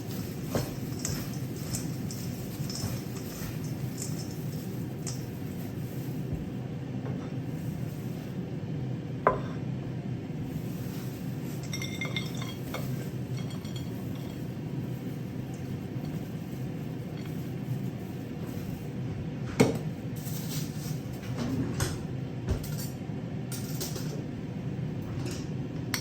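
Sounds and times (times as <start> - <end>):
steady low hum: 0.0 - 26.0
glass and dishes clinking: 11.5 - 14.4.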